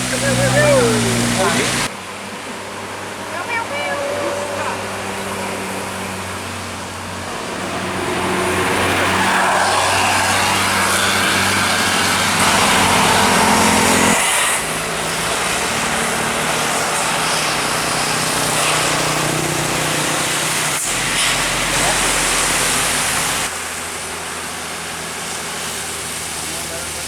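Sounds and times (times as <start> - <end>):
bus passing close by: 0.0 - 27.0
engine running steadily: 0.0 - 27.0.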